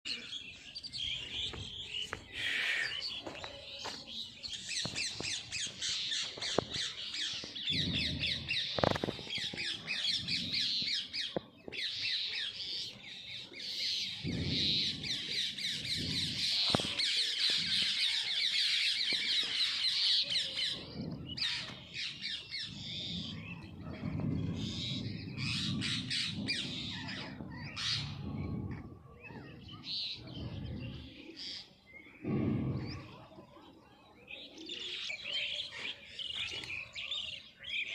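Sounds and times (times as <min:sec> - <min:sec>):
birds chirping and squawking: 0:00.1 - 0:37.9
low rumble: 0:20.7 - 0:31.1.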